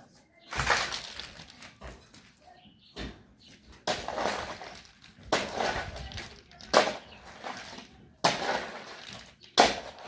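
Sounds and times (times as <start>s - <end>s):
shovel scraping through gravel: 4.0s - 10.0s.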